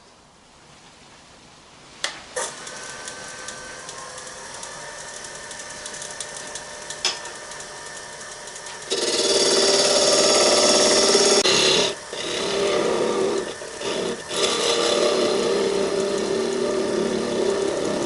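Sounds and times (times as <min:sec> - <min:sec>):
lathe click: 0:02.0 - 0:18.0
lathe tool cutting wood: 0:02.4 - 0:18.0
wood lathe whine: 0:02.4 - 0:18.0.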